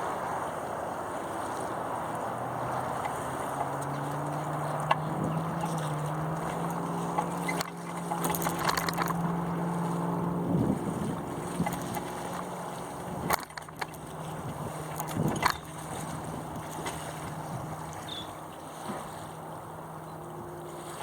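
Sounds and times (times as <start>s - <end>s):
water noise: 0.0s - 21.0s
wind: 0.0s - 21.0s
steady low hum: 2.6s - 21.0s
rig knocks and rattles: 3.0s - 9.9s, 13.2s - 17.0s.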